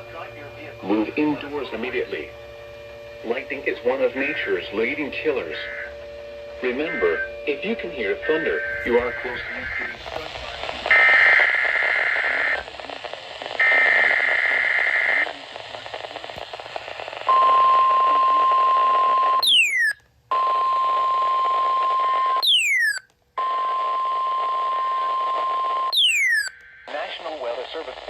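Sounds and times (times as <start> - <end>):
radio hiss: 0.0 - 2.4, 3.1 - 19.7, 26.9 - 28.0
steady high warning beep: 17.3 - 20.0, 22.4 - 23.0, 25.9 - 26.6
buzzy digital data bursts: 26.0 - 26.5.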